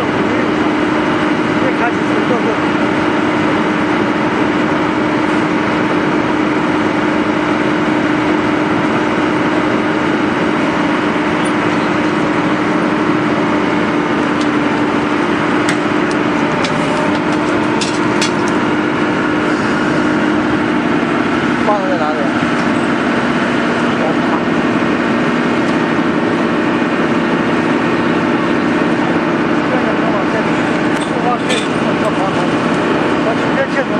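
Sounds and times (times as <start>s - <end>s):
diesel engine humming: 0.0s - 33.9s.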